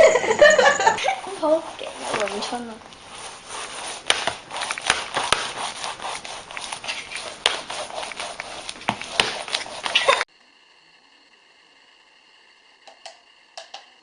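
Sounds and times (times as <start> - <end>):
hair dryer blowing: 0.0 - 10.3.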